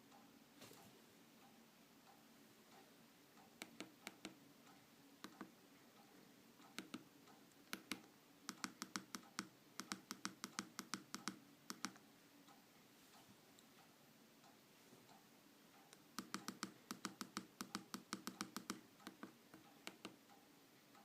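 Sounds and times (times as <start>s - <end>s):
faint low hum: 0.0s - 21.0s
phone screen taps and clicks: 6.7s - 7.0s, 7.7s - 12.0s.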